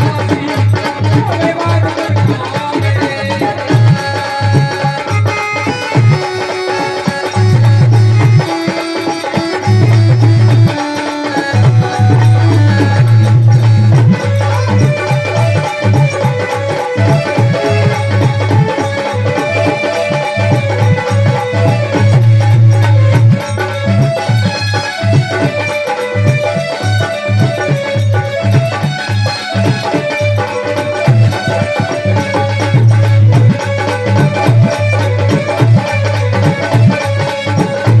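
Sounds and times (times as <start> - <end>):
instrumental melody line: 0.0 - 38.0
drum beat with heavy bass: 11.5 - 16.2.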